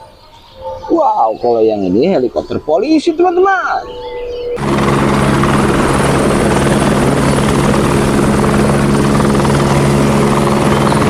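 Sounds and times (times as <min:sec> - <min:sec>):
helicopter engine whine: 0:00.0 - 0:11.0
helicopter rotor chop: 0:04.6 - 0:11.0.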